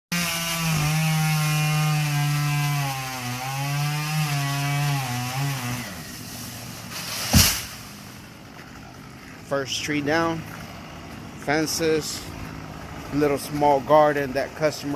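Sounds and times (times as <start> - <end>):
chainsaw cutting wood: 0.1 - 9.2
tree falling thud: 6.4 - 8.0.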